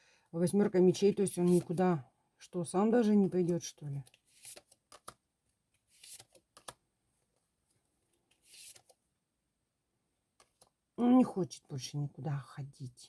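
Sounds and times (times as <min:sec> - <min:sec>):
cards sliding swishes: 0:01.4 - 0:01.8, 0:04.1 - 0:05.2, 0:05.8 - 0:06.8, 0:08.3 - 0:09.0.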